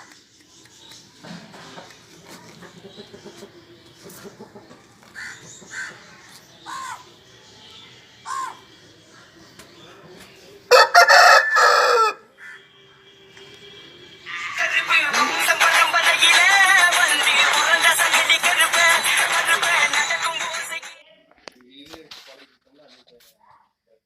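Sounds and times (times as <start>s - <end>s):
chickens clucking: 1.1s - 7.0s.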